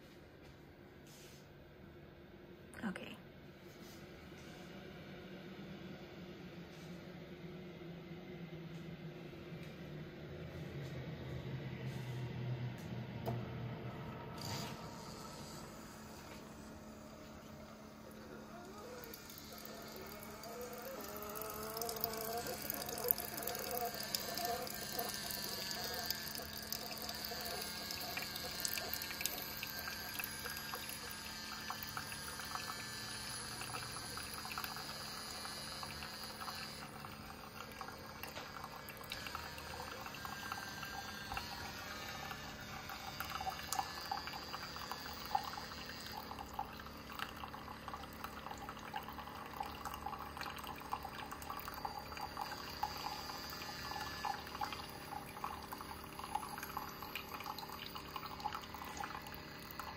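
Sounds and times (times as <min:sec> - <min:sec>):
coffee dripping into cup: 0:14.4 - 0:59.9.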